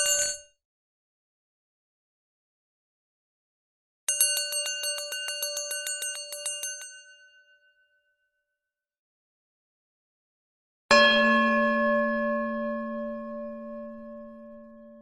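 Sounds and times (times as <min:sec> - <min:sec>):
small metal bell ringing: 0:00.0 - 0:00.5, 0:04.1 - 0:08.0.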